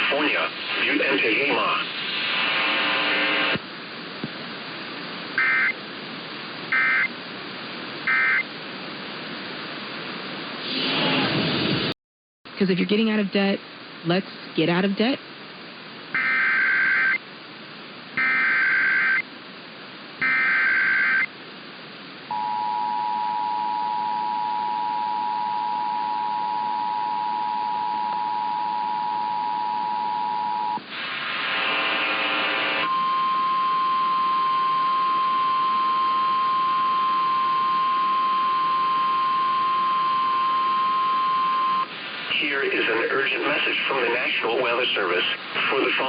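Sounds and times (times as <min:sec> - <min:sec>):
steady warning alarm tone: 0:05.4 - 0:05.8, 0:06.7 - 0:07.1, 0:08.1 - 0:08.5, 0:16.2 - 0:17.2, 0:18.2 - 0:19.2, 0:20.2 - 0:21.3
warbling data tones: 0:05.4 - 0:05.8, 0:08.1 - 0:08.4, 0:16.2 - 0:17.2, 0:18.2 - 0:19.2.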